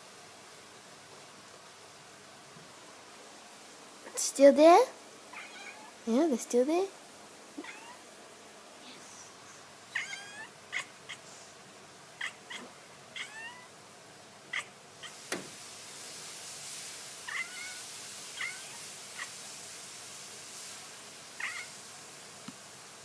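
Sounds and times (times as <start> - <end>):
steady hiss: 0.0 - 23.0
cat chirping: 5.3 - 6.0, 7.6 - 8.0, 9.9 - 11.2, 12.2 - 13.8, 14.5 - 15.2, 17.2 - 19.4, 21.4 - 21.7.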